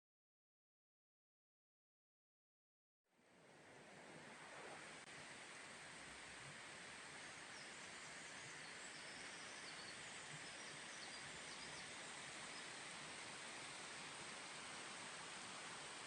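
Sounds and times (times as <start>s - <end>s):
faint outdoor hiss: 3.1s - 16.0s
faint high bird chirps: 7.4s - 12.8s.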